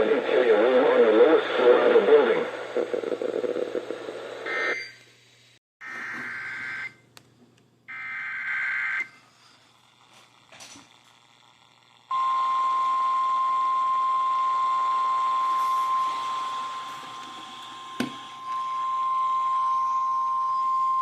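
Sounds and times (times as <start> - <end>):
steady high alarm beep: 17.9 - 21.0.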